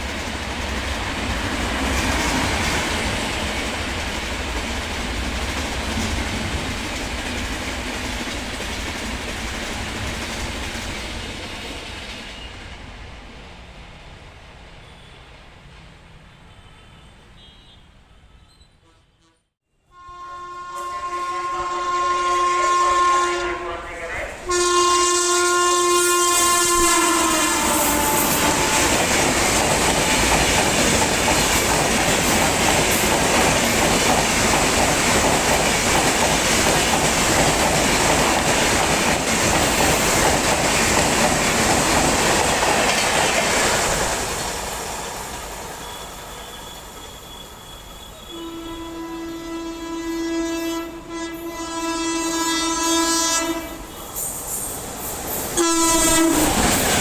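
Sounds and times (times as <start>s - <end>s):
train air horn: 14.8s - 15.3s, 16.4s - 29.0s, 45.8s - 54.4s, 55.6s - 56.8s
train wheels rattling over rail joints: 26.4s - 45.6s, 54.5s - 57.0s.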